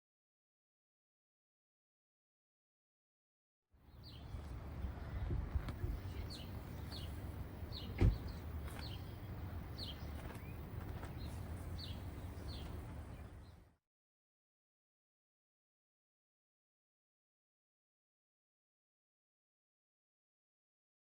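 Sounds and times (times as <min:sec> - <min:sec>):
bird chirping: 0:03.8 - 0:13.8.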